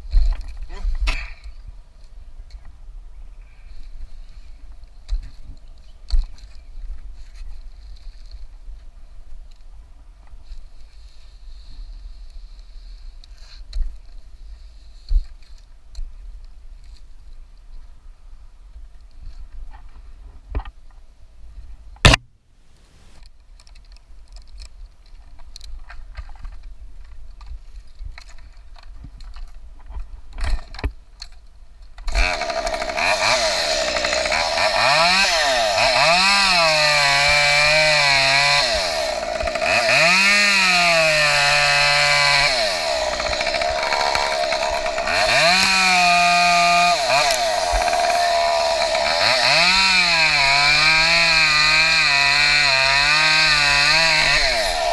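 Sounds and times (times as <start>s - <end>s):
chainsaw cutting wood: 32.0s - 54.9s.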